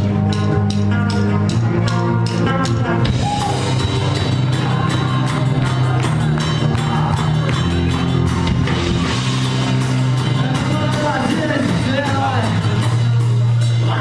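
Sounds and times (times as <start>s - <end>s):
drum kit: 0.0s - 14.0s
guitar: 0.0s - 14.0s.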